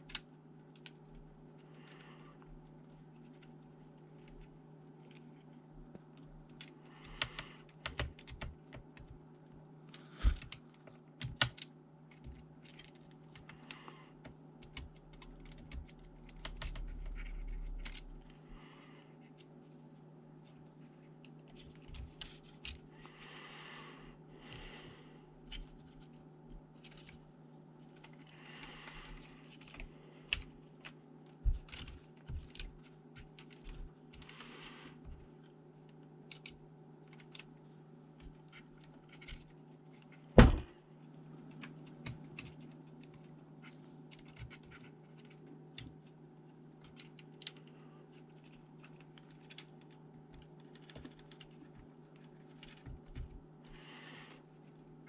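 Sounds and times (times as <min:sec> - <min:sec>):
steady low hum: 0:00.0 - 0:55.0
clicks and taps of laptop parts: 0:10.2 - 0:13.8
loud knock: 0:40.4 - 0:40.7.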